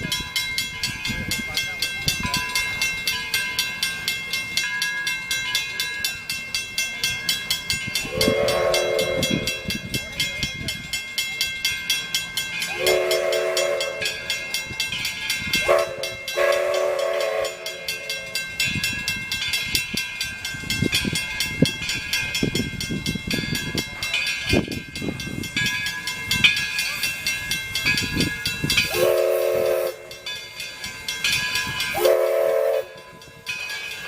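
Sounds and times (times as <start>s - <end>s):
steam locomotive chuffing: 0.0s - 34.0s
steam locomotive chime whistle: 7.4s - 10.9s, 12.3s - 24.8s, 25.4s - 34.0s.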